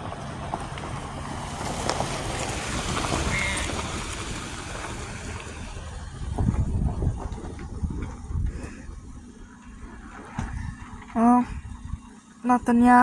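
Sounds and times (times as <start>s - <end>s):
low hum: 0.0s - 13.0s
wind on microphone: 2.9s - 12.2s.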